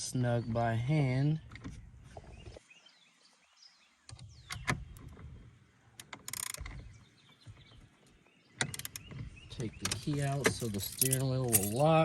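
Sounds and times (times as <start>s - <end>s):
light metallic clicks: 9.7s - 12.0s.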